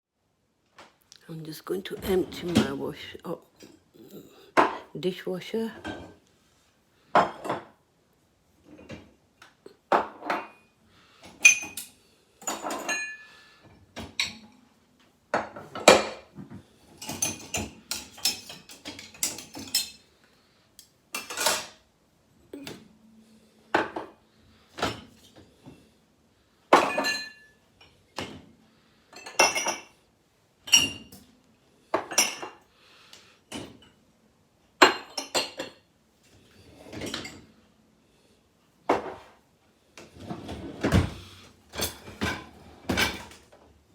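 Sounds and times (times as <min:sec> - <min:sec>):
dishes and cutlery clinking: 0:11.3 - 0:13.4, 0:16.9 - 0:20.1, 0:21.1 - 0:21.8, 0:26.7 - 0:28.4, 0:29.1 - 0:30.0, 0:30.6 - 0:31.3, 0:32.0 - 0:32.6, 0:34.8 - 0:35.9, 0:36.9 - 0:37.6, 0:41.7 - 0:43.5.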